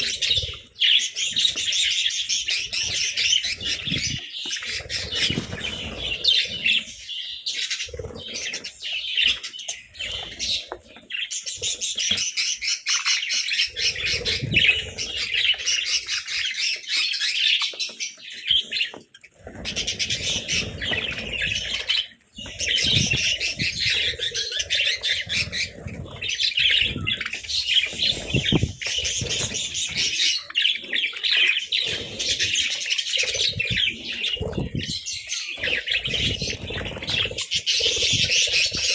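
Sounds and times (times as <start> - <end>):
wings fluttering: 0.0 - 16.9, 18.4 - 38.9
budgerigars chirping: 0.0 - 38.9.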